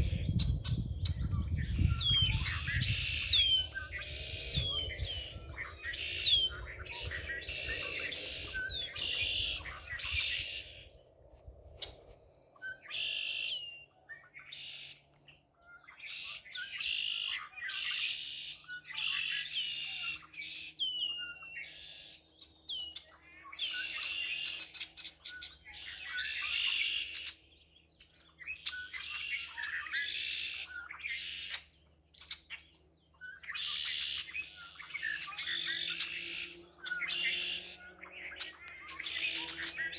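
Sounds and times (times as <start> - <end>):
songbirds singing: 0.0 - 39.9.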